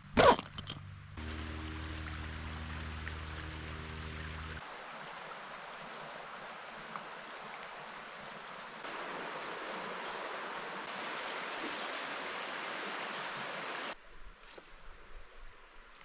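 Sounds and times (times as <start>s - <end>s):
stream water rushing: 1.2s - 14.0s.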